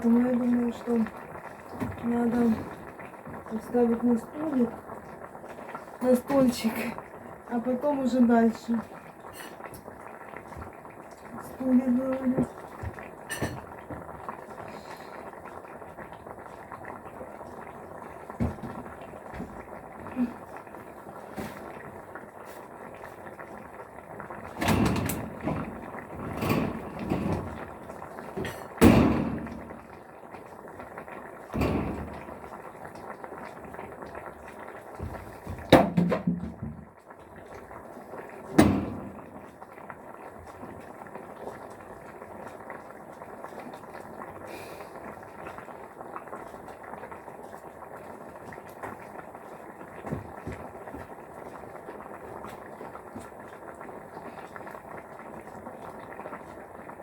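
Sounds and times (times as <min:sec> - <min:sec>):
knocks and clunks of objects: 0:01.0 - 0:03.5, 0:12.2 - 0:14.3, 0:18.3 - 0:20.2, 0:21.3 - 0:21.9, 0:24.2 - 0:30.0, 0:30.8 - 0:34.2, 0:34.8 - 0:39.8, 0:50.0 - 0:51.2.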